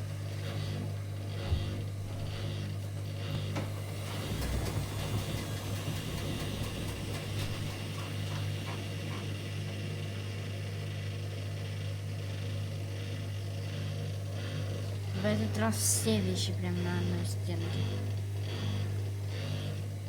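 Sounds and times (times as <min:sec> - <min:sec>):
washing machine spinning: 0:00.0 - 0:20.0
washing machine squeak: 0:03.6 - 0:08.6.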